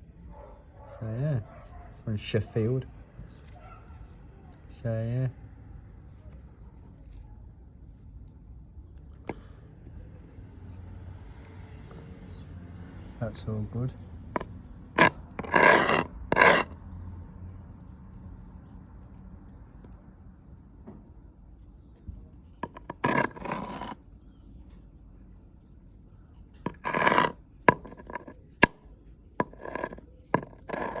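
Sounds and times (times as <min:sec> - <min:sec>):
objects scraping on hard surface: 0:13.9 - 0:16.8, 0:22.0 - 0:24.1, 0:25.9 - 0:31.0.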